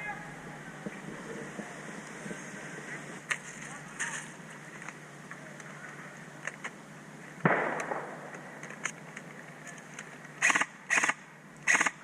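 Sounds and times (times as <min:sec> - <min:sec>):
airsoft gunshots: 0:07.4 - 0:08.3, 0:10.4 - 0:12.0
automatic airsoft fire bursts: 0:10.4 - 0:12.0.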